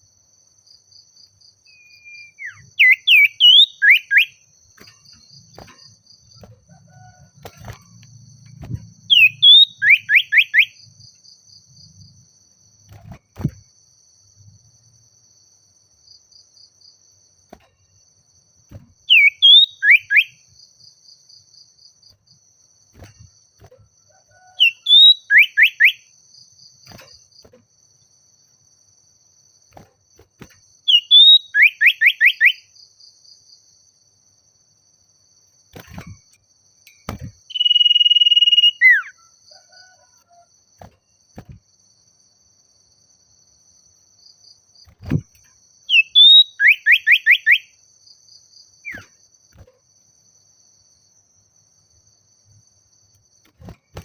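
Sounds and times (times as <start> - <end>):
faint high insect buzz: 0.0 - 54.0
bird singing whistled phrases: 1.7 - 4.4, 9.1 - 10.8, 19.1 - 20.4, 24.6 - 26.0, 30.9 - 32.6, 37.5 - 39.2, 45.9 - 47.7.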